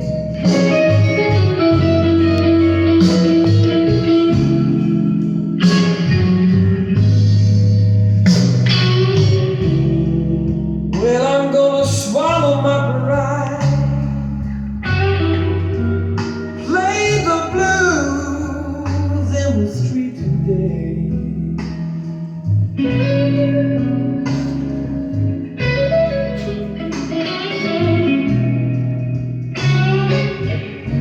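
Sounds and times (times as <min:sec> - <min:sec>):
blues guitar: 0:00.0 - 0:31.0
man singing: 0:11.0 - 0:14.4, 0:16.6 - 0:21.6.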